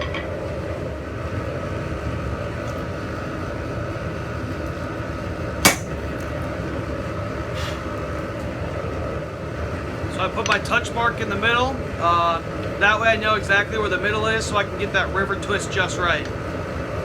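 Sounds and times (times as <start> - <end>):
steady mechanical hum: 0.0 - 17.0
hammer blow on metal: 5.6 - 6.0.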